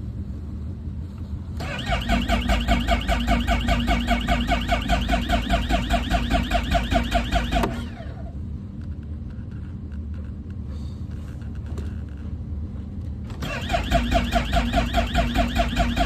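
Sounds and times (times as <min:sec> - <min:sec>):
electric starter cranking engine: 0:01.6 - 0:08.2, 0:13.4 - 0:16.0
low steady rumble: 0:01.6 - 0:08.3.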